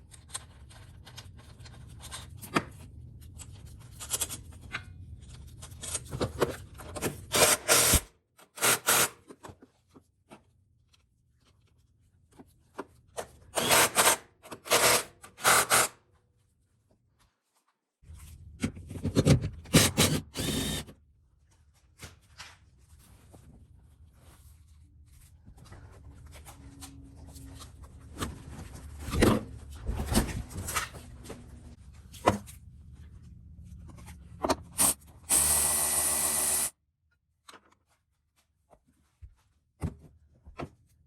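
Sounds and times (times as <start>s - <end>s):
tool scraping and grating: 19.7s - 20.9s.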